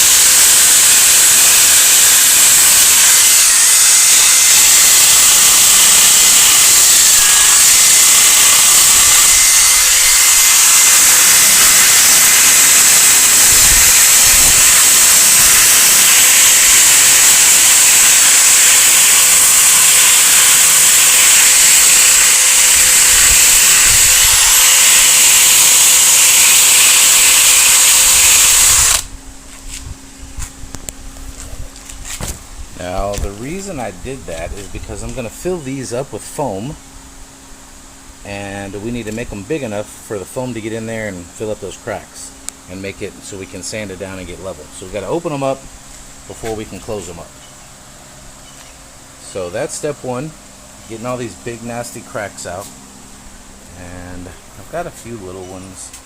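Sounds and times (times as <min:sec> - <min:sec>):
drill wire wheel grinding plastic: 0:00.0 - 0:29.1.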